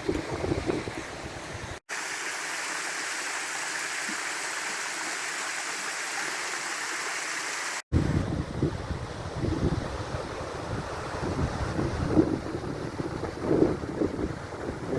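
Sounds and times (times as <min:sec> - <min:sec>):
wind buffeting microphone: 0:00.0 - 0:01.8, 0:07.9 - 0:14.9.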